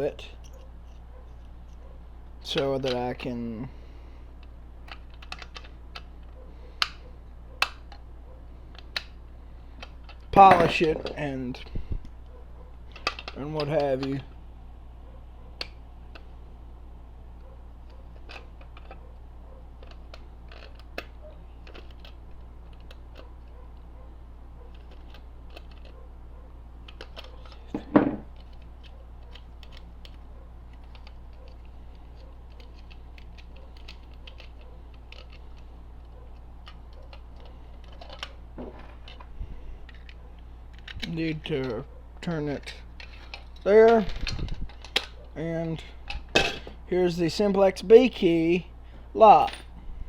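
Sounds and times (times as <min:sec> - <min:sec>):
steady low hum: 0:03.3 - 0:50.0
metal parts clicking and tapping: 0:09.8 - 0:11.3, 0:46.0 - 0:46.8, 0:49.2 - 0:49.7.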